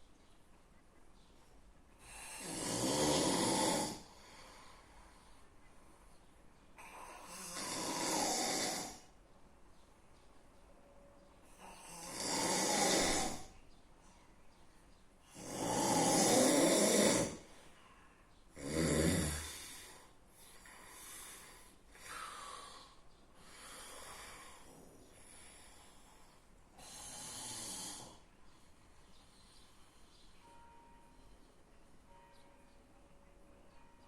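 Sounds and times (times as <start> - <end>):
person snoring loudly: 2.2 - 4.1, 7.2 - 9.1, 11.8 - 13.5, 15.3 - 17.4, 18.6 - 19.8, 26.8 - 28.2.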